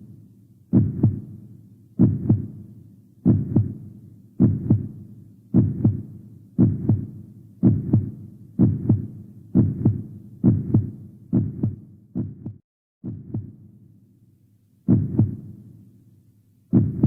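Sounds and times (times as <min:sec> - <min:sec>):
heartbeat thumps: 0:00.7 - 0:01.3, 0:02.0 - 0:02.6, 0:03.2 - 0:03.8, 0:04.4 - 0:13.6, 0:14.9 - 0:15.4, 0:16.7 - 0:17.0.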